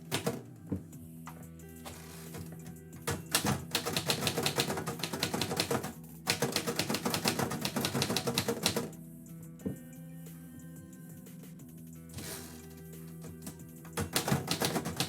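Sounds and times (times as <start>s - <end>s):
typewriter keys clattering: 1.9s - 8.9s, 13.4s - 15.0s.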